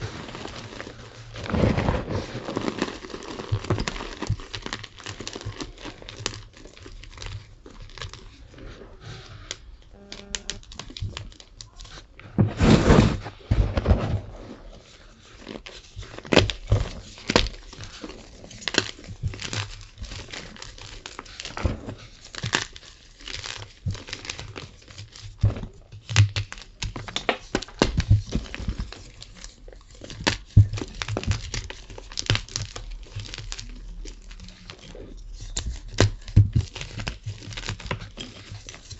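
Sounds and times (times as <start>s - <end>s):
chalk being crushed: 0.0s - 25.3s.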